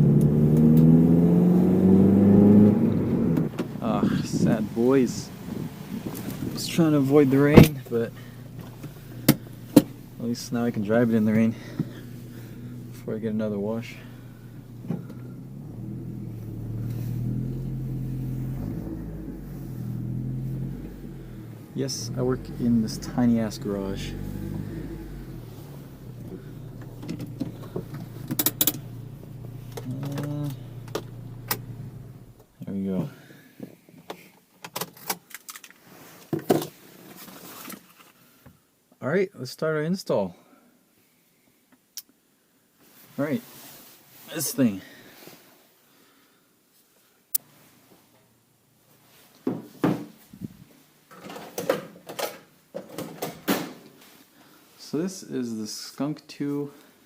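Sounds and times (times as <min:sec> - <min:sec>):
car engine idling: 0:00.0 - 0:32.5.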